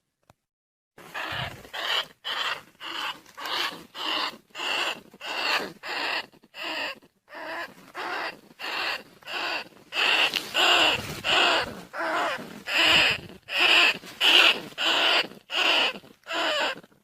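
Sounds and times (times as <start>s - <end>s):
scratchy rat squeaks: 1.0s - 17.0s.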